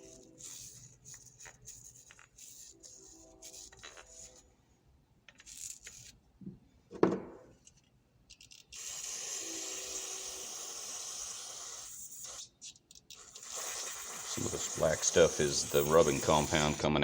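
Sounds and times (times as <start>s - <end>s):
aerosol spray hissing: 8.8s - 12.5s, 13.3s - 16.9s.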